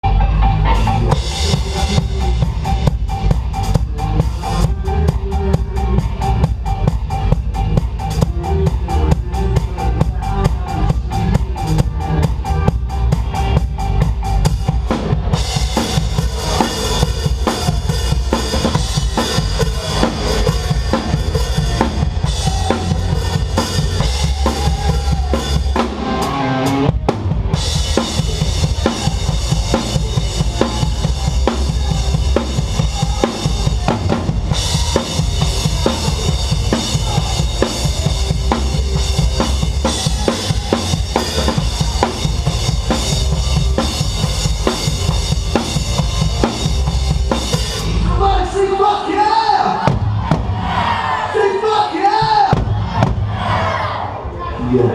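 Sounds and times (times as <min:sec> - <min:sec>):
drum kit playing: 0:00.0 - 0:51.3
rock band playing live: 0:00.0 - 0:53.6.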